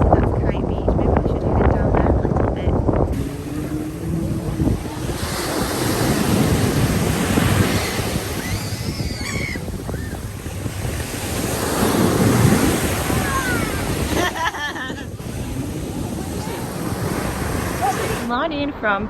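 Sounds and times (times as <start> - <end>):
wind buffeting microphone: 0.0 - 19.0
sea waves washing onto beach: 3.1 - 18.6
faint high-pitched cries: 8.4 - 10.2.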